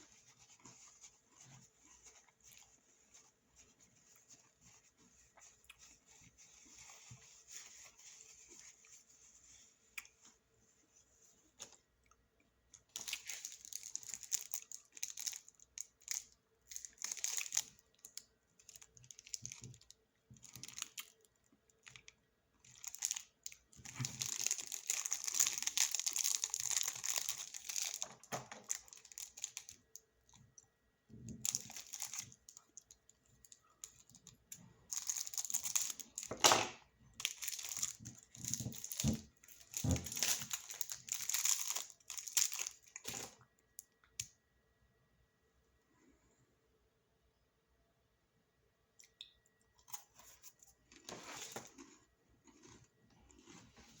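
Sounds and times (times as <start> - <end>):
snack packaging crinkling: 12.8 - 30.4, 31.4 - 36.4, 37.2 - 43.4.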